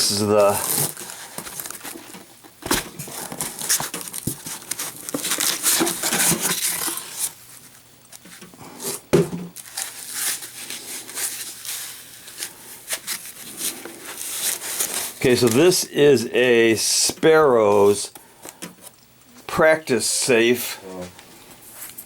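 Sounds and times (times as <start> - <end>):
packing padding crinkling: 0.0 - 9.0, 9.6 - 15.9.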